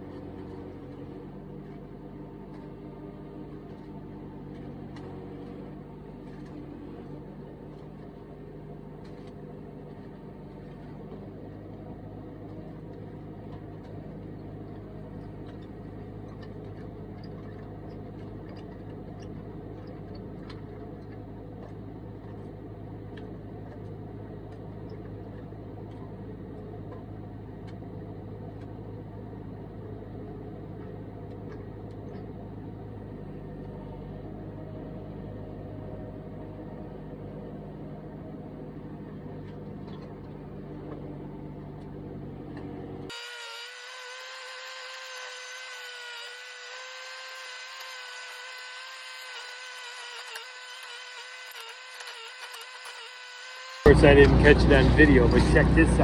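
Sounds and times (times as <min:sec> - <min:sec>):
engine running: 0:00.0 - 0:56.0
auger drilling rocky ground: 0:42.5 - 0:56.0.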